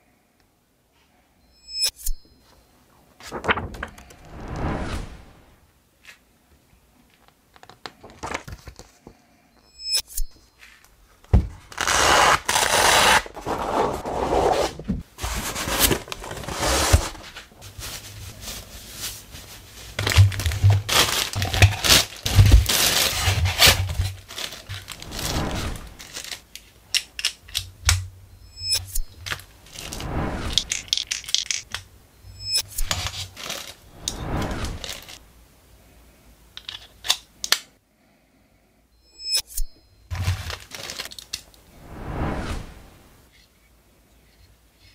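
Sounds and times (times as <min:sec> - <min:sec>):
packing material tearing and crinkling: 0:11.6 - 0:13.6, 0:18.3 - 0:26.6, 0:32.9 - 0:33.8, 0:34.8 - 0:35.2, 0:40.1 - 0:41.5.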